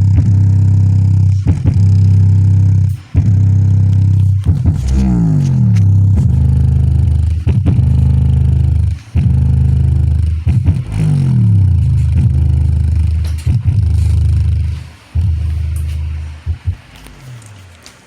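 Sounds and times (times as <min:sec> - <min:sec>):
bass-heavy music through subwoofer: 0:00.0 - 0:18.0.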